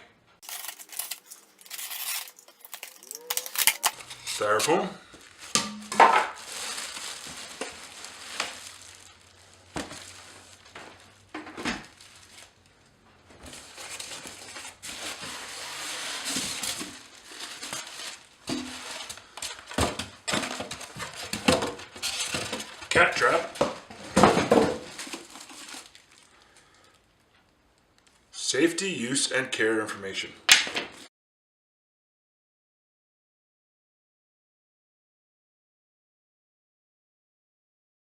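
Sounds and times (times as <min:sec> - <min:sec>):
packaging rustling and crinkling: 0:00.4 - 0:27.2
sharp knocks of parts set down: 0:05.5 - 0:06.4.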